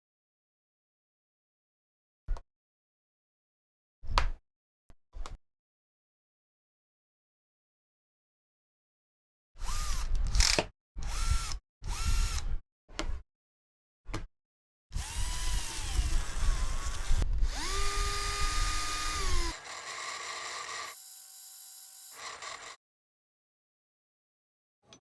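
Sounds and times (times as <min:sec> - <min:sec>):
electric drill motor whining: 0:09.6 - 0:12.5, 0:15.0 - 0:22.8.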